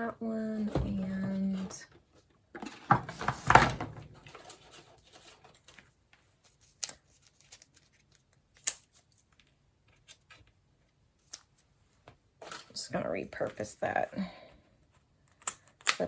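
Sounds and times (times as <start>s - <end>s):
paper rustling: 2.6s - 10.5s.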